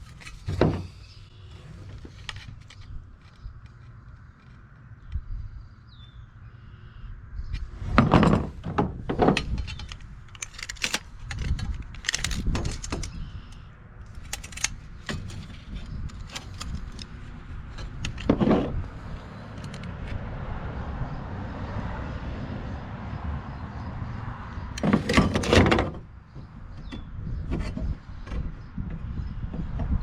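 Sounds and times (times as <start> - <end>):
metal knocks: 7.9 - 13.2
tools clicking and clinking: 8.3 - 13.3, 14.1 - 18.6, 19.5 - 19.9, 24.8 - 25.8.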